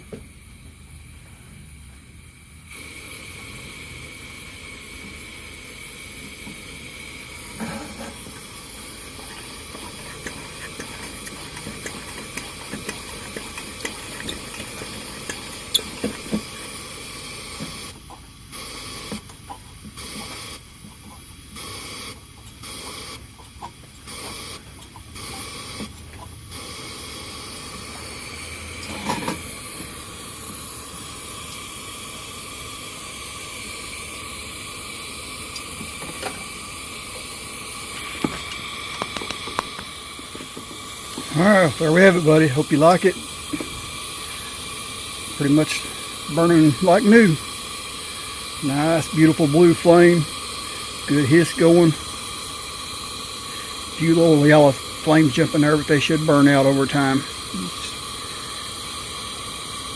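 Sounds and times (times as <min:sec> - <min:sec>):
camp stove burner hissing: 0:00.0 - 0:59.9
crackles: 0:04.4 - 0:28.1, 0:35.4 - 0:59.9.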